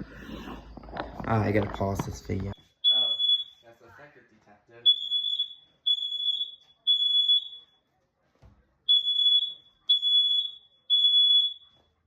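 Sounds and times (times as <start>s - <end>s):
smoke detector beeping: 2.8s - 3.6s, 4.9s - 7.7s, 8.9s - 11.8s.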